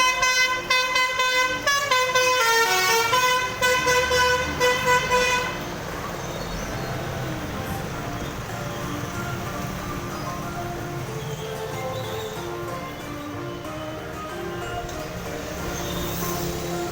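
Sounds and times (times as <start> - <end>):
musical bus air horn: 0.0 - 5.8
traffic noise: 0.0 - 16.9.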